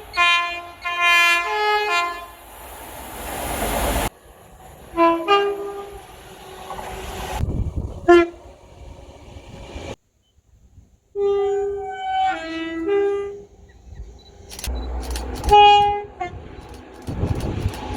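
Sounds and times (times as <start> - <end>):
train horn blasts: 0.0 - 2.4, 4.9 - 6.1, 8.1 - 8.4, 11.2 - 13.6, 15.4 - 17.9
sharp clicks: 14.2 - 15.9, 16.6 - 17.9.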